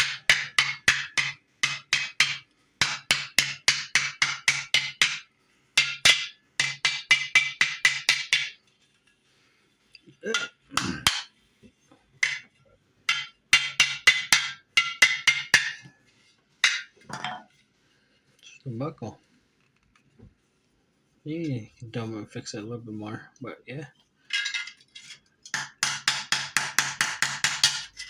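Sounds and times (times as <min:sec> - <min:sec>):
hammer tapping metal punch: 0:25.5 - 0:28.0.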